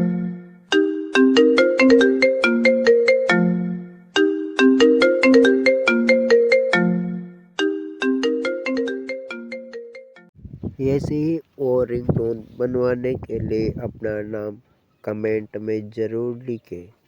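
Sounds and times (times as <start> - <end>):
phone ringtone melody: 0.0 - 10.3.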